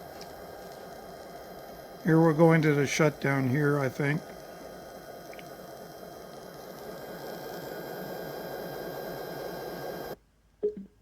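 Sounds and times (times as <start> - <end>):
diesel locomotive engine chugging: 0.0 - 10.2.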